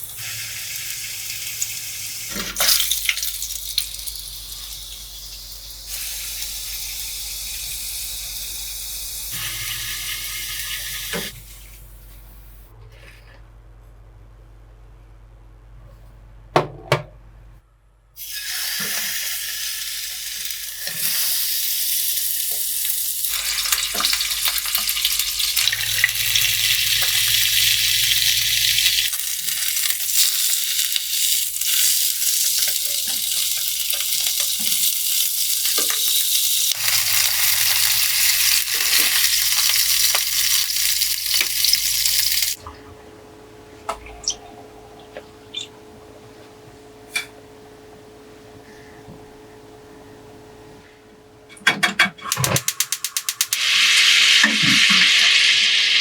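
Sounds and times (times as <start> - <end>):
food sizzling in hot oil: 0.0 - 11.4, 18.2 - 42.6, 53.5 - 56.0.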